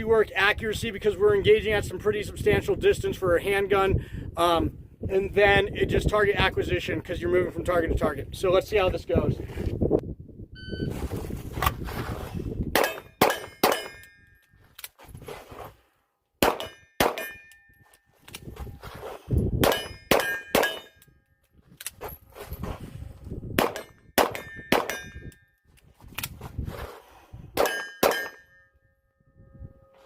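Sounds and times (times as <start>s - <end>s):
metallic clang of steel targets: 12.8s - 14.5s, 16.4s - 18.1s, 19.6s - 21.2s, 23.6s - 25.4s, 27.6s - 28.9s
handgun shots: 16.4s - 17.4s, 23.6s - 25.1s.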